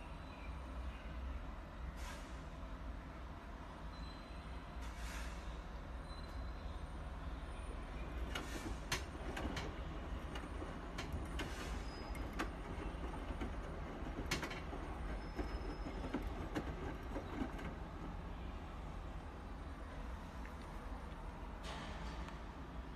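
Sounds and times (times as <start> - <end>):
washing machine humming: 8.0 - 18.7
sharp clicks and knocks: 8.3 - 17.8.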